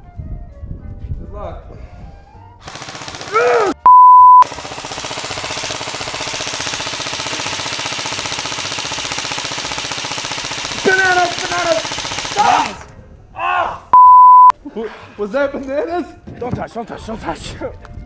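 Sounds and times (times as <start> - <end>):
airsoft rifle full auto fire: 2.6 - 3.8, 4.4 - 12.9
person yelling: 3.3 - 3.8, 12.4 - 12.8, 13.4 - 13.9
censor beep: 3.8 - 4.4, 14.0 - 14.5.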